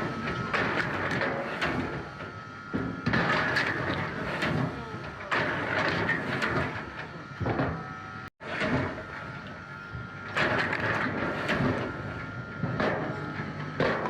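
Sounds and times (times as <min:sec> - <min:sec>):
wood-processing machinery running: 0:00.0 - 0:14.0.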